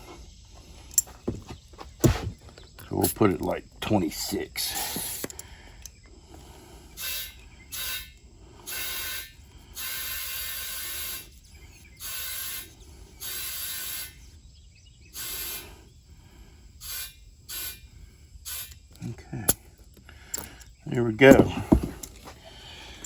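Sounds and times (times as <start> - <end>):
compressed air hissing bursts: 7.0 - 11.4, 12.0 - 14.3, 15.1 - 18.8.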